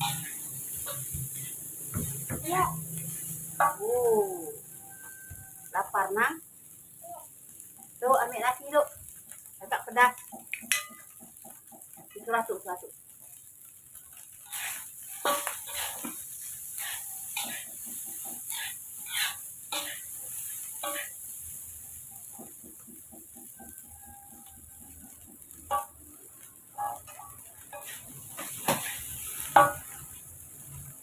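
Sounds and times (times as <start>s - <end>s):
metal utensil scraping cookware: 0.0s - 1.6s, 14.5s - 16.2s, 16.8s - 20.1s, 20.8s - 21.1s, 26.8s - 30.0s
steady high hiss: 0.0s - 31.0s.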